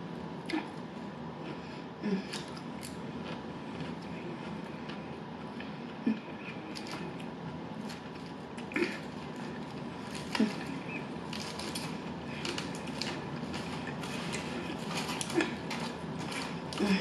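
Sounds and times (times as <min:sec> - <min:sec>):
chewing: 0:02.3 - 0:17.0
sharp clicks and crunches: 0:06.7 - 0:17.0.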